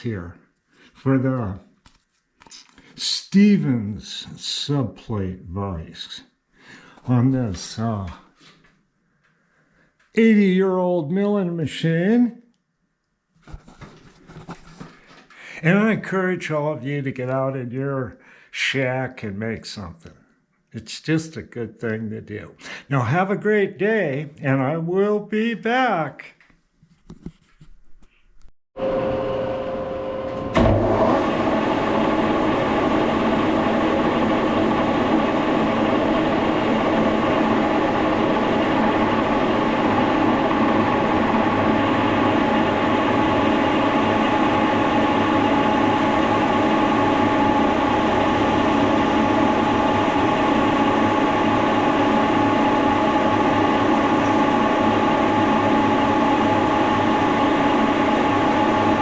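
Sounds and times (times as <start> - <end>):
milling machine motor whine: 28.8 - 59.0.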